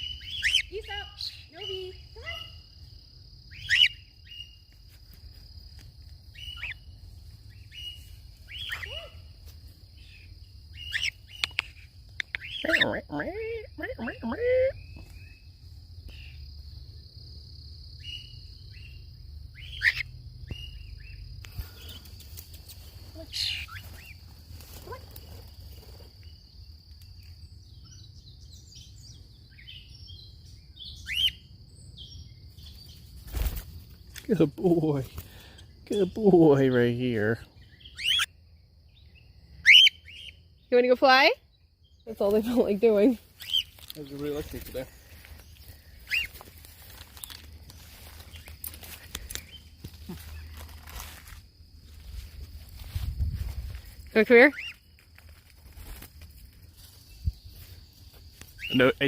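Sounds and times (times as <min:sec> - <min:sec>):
chirping bird calls: 0:00.0 - 0:02.7, 0:03.4 - 0:04.7, 0:06.3 - 0:06.9, 0:07.5 - 0:09.2, 0:10.0 - 0:16.5, 0:17.9 - 0:22.0, 0:23.2 - 0:24.2, 0:27.6 - 0:33.1, 0:34.4 - 0:46.5, 0:57.2 - 0:59.0
high insect drone: 0:00.0 - 0:59.0
wind rumble on microphone: 0:52.1 - 0:54.1.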